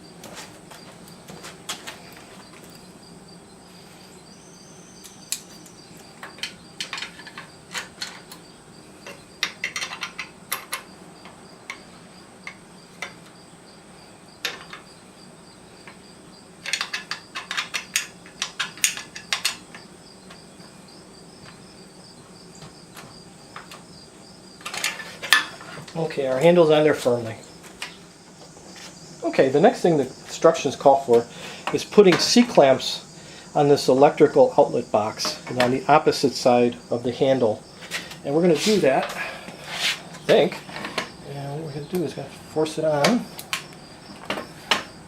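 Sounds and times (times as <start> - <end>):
tools clinking against metal bolts: 6.2 - 8.4, 9.0 - 10.9, 16.6 - 19.8.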